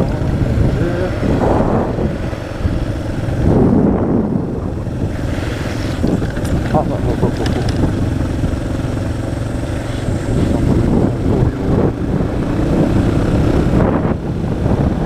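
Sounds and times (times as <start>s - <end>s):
motorcycle engine running: 0.0s - 15.0s
wind noise on microphone: 0.0s - 15.0s.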